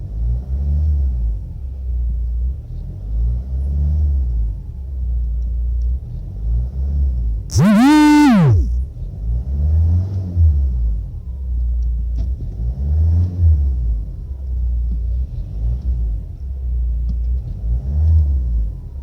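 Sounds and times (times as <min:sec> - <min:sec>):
diesel engine revving: 0:07.5 - 0:08.7
faint engine whistle: 0:07.5 - 0:08.7.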